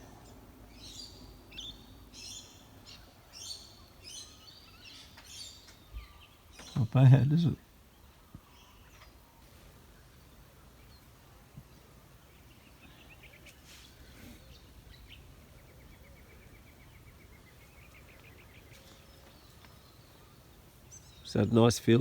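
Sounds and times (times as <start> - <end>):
bird trill: 0.0 - 9.2
bird chirps: 0.0 - 22.0.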